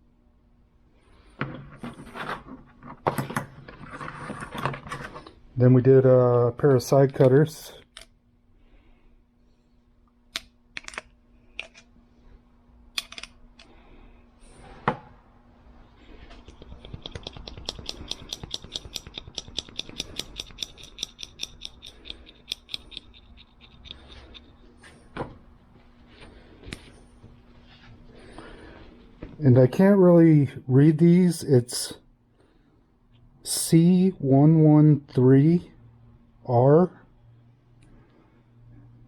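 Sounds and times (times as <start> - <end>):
faint steady hum: 0.0 - 39.0
steel side cutters clicking: 17.0 - 24.2.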